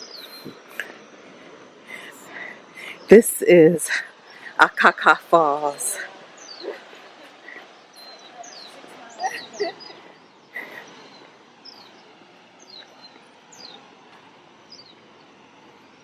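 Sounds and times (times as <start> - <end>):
small birds chirping: 0.0 - 16.0
waterfall rushing: 0.0 - 16.0
voices: 1.9 - 12.2.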